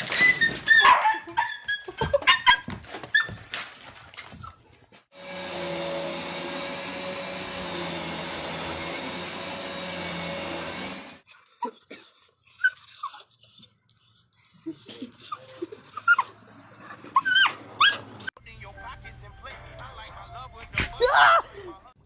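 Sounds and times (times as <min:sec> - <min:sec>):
dog yelping and whining: 0:00.0 - 0:03.4, 0:04.2 - 0:05.1, 0:12.4 - 0:13.7, 0:15.0 - 0:18.3
appliance motor whirring: 0:05.2 - 0:11.2.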